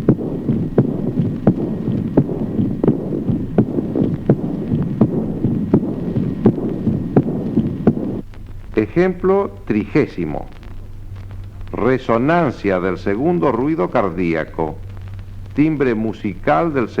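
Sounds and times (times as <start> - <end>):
heartbeat clicks: 0.0 - 17.0
low rushing heart murmur: 0.0 - 17.0.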